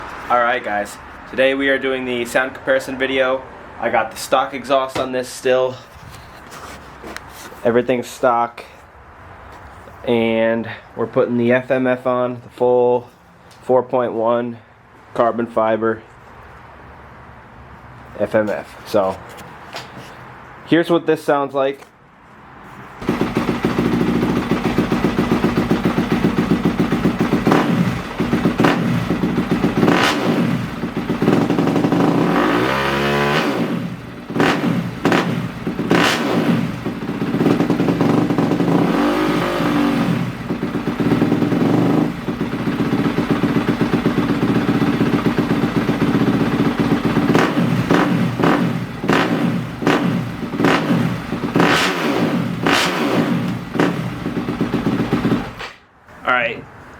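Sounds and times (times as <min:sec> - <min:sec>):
motorcycle engine idling and revving: 0:23.0 - 0:55.6.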